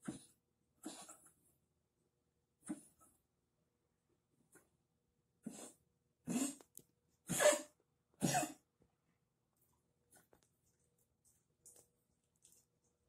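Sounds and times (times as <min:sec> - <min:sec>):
dog coughing: 0:00.0 - 0:01.3, 0:05.4 - 0:08.7.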